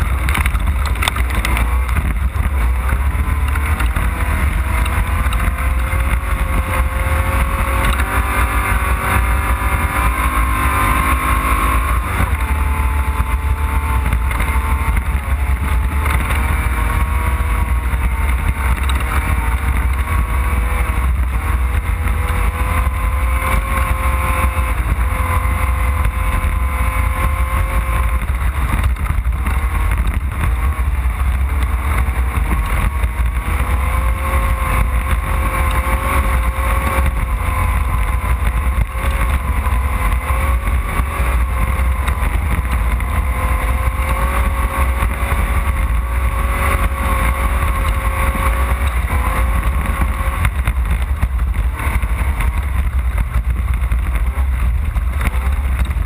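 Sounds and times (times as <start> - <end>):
heavy low rumble: 0.0 - 56.0
off-road vehicle engine running: 0.0 - 56.0.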